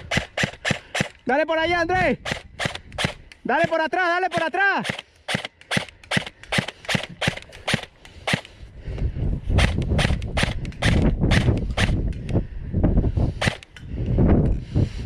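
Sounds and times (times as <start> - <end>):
airsoft gun shots: 0.0 - 1.2, 2.2 - 8.5, 9.6 - 12.0.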